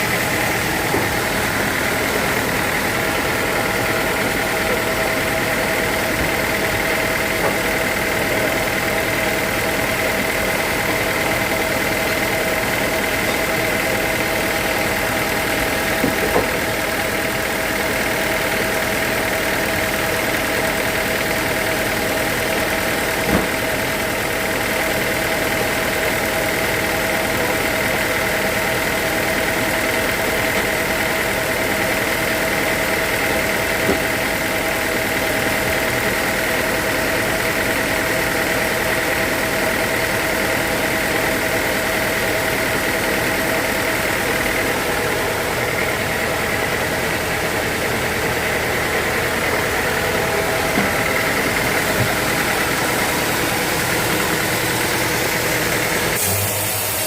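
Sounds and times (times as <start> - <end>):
sawmill machinery whining: 0.0 - 57.0.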